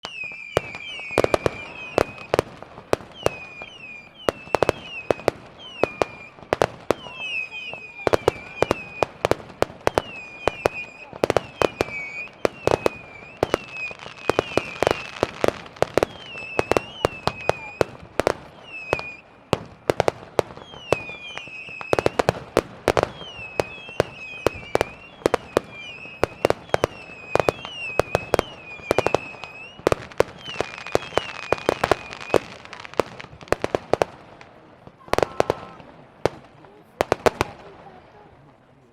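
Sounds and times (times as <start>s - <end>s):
fireworks bangs and cracks: 0.0s - 38.8s
high whistling fireworks: 0.0s - 38.9s.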